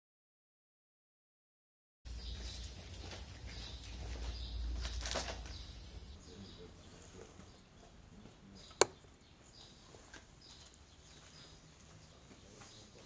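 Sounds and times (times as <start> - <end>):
low rumble: 2.1 - 6.4.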